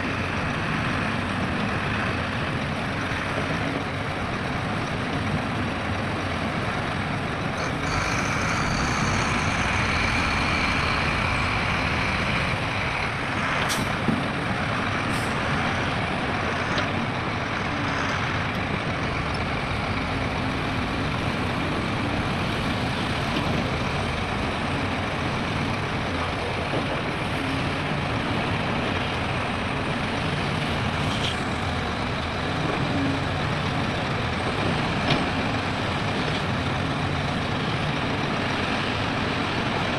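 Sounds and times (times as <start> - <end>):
heavy diesel machinery running: 0.0 - 39.9.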